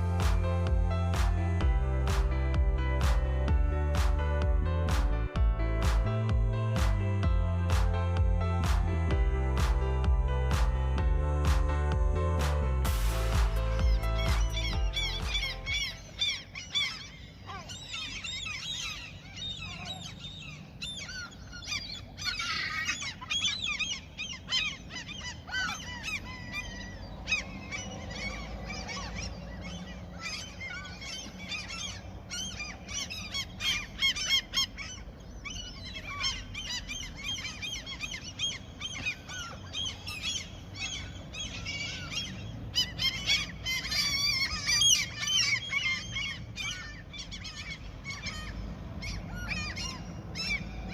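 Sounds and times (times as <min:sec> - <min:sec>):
gulls calling: 0:12.4 - 0:50.9.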